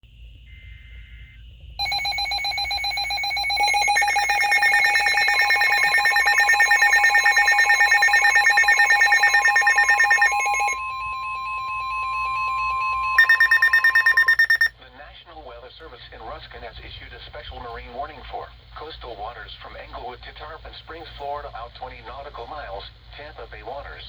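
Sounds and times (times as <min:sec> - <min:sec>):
fast-pulsing electronic alarm: 0:01.8 - 0:14.7
steady single-pitch alarm tone: 0:01.8 - 0:14.7.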